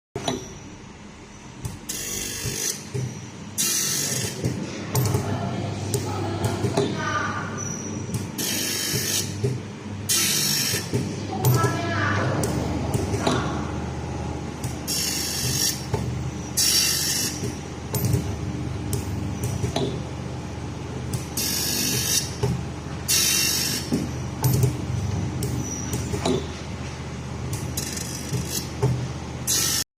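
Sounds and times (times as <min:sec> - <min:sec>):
grinding machine humming: 0:08.4 - 0:26.1.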